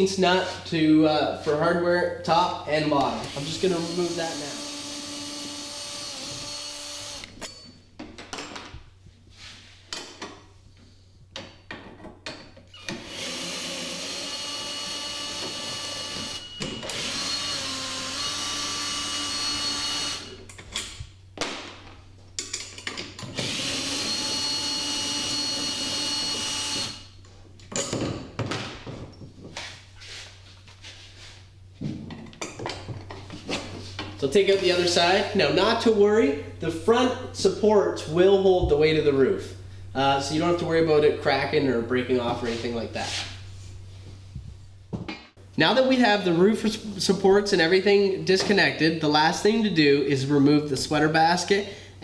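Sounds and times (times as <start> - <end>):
power drill running: 3.2 - 7.4, 12.8 - 20.4, 23.4 - 27.1.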